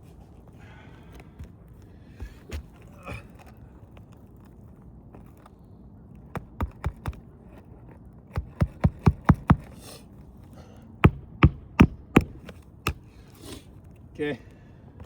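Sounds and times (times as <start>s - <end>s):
sharp knocks: 8.4s - 9.7s, 11.0s - 13.0s.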